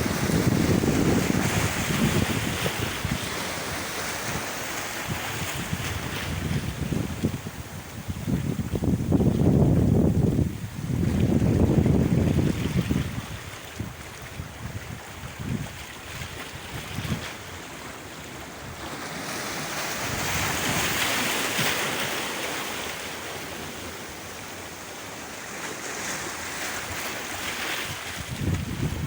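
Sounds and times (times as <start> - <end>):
wind buffeting microphone: 0.0 - 17.6, 26.8 - 29.0
sea waves washing ashore: 0.0 - 29.0.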